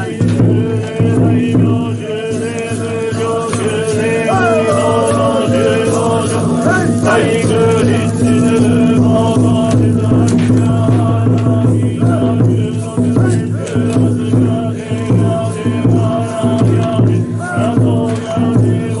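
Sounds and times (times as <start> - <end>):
monks chanting in unison: 0.0 - 19.0
voices sliding in pitch: 4.0 - 8.8.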